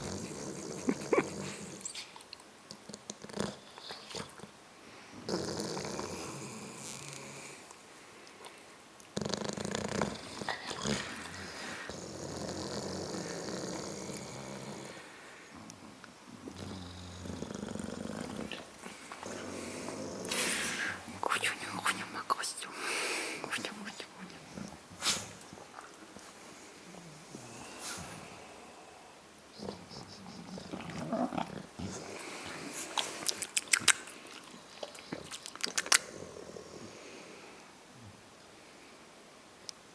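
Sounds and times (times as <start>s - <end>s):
pet snoring: 0.0s - 1.9s, 2.8s - 4.4s, 5.2s - 7.7s, 9.2s - 15.2s, 16.4s - 22.0s, 29.6s - 33.0s
wet lip-smacking clicks: 33.0s - 36.1s.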